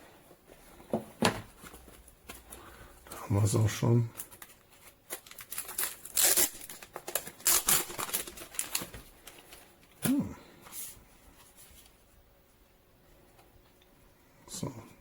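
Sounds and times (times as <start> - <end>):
packaging rustling: 4.2 - 9.9.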